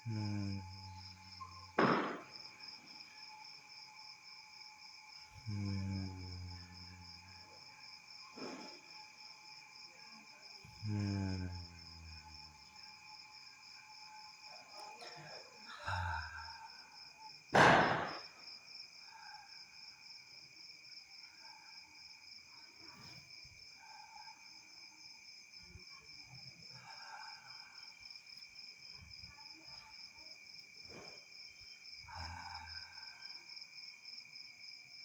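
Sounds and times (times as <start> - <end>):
crickets trilling: 0.0 - 35.0
firecracker bang: 1.8 - 2.4, 17.5 - 18.4.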